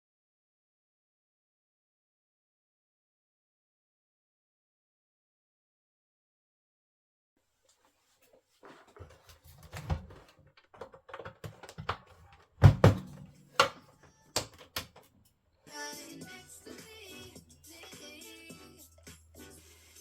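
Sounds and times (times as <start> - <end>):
plastic parts clicking and knocking: 9.6 - 15.2
music playing: 15.7 - 20.0.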